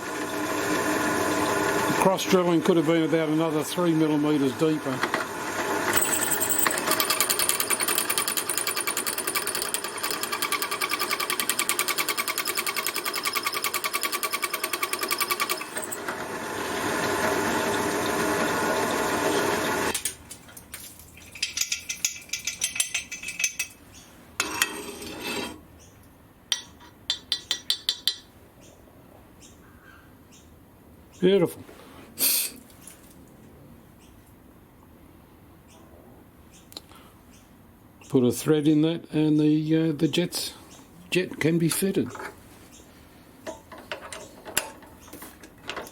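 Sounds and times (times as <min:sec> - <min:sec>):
drill press drilling metal: 0:00.0 - 0:02.7, 0:03.3 - 0:20.0
short machine bursts: 0:05.9 - 0:16.2.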